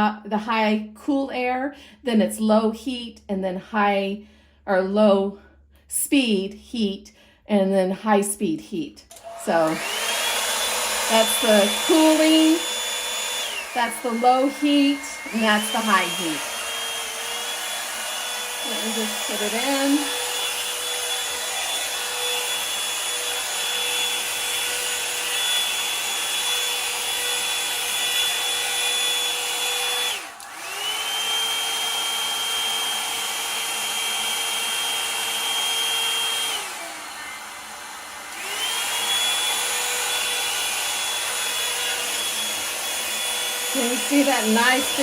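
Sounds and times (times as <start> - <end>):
hot-air brush dryer running: 9.1 - 45.0.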